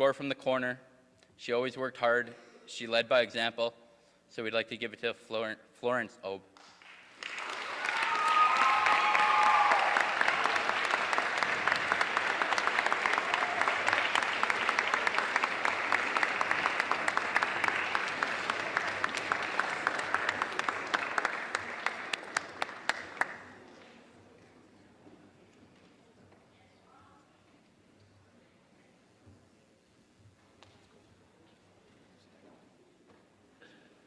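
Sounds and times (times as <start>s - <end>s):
audience clapping: 6.6s - 24.1s
person whooping: 7.8s - 10.1s.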